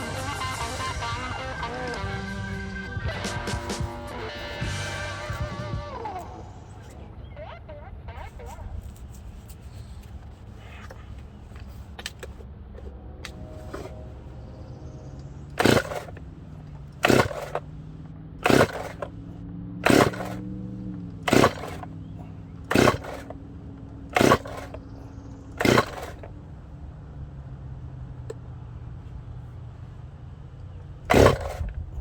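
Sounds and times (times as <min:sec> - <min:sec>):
steady low hum: 0:00.0 - 0:32.0
chainsaw starter cord pulls: 0:13.6 - 0:14.0, 0:15.5 - 0:17.7, 0:18.4 - 0:19.2, 0:19.8 - 0:20.6, 0:21.2 - 0:23.4, 0:24.1 - 0:26.3, 0:31.1 - 0:31.8.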